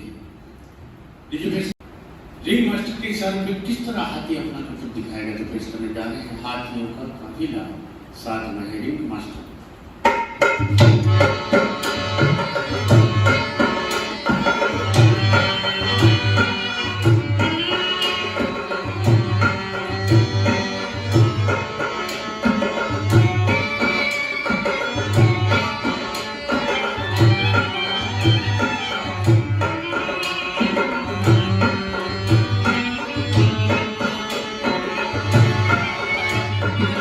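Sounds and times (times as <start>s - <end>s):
hand drum beating: 10.1s - 37.0s
sustained melody instruments: 10.4s - 37.0s.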